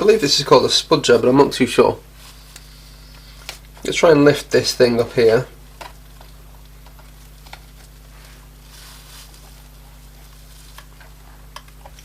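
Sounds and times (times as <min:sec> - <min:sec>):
low electrical hum: 0:00.0 - 0:12.0
scraping rustle: 0:07.8 - 0:10.9.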